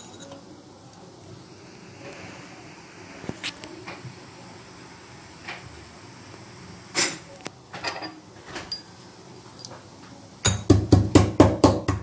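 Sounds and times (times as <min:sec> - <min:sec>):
kitchen knocks and clatters: 0:07.0 - 0:08.9, 0:10.4 - 0:12.0.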